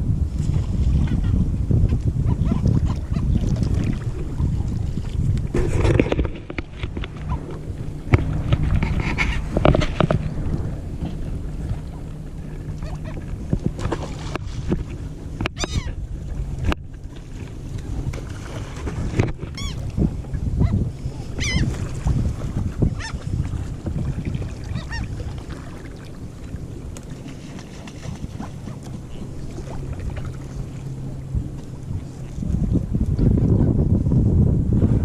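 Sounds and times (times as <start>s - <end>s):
boat engine humming: 0.0s - 35.0s
seagulls calling: 8.6s - 9.8s, 11.9s - 13.3s, 15.5s - 16.0s, 19.4s - 19.9s, 20.6s - 21.8s, 22.8s - 23.2s, 24.6s - 25.2s, 28.2s - 31.1s.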